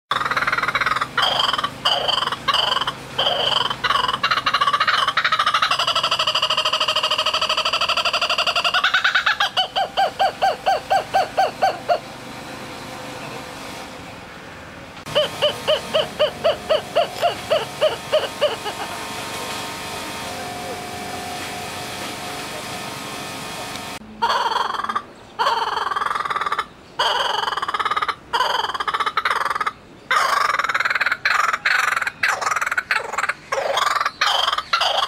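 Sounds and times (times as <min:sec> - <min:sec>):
kookaburra laughing call: 0:00.1 - 0:12.1, 0:15.1 - 0:19.2, 0:24.2 - 0:35.0.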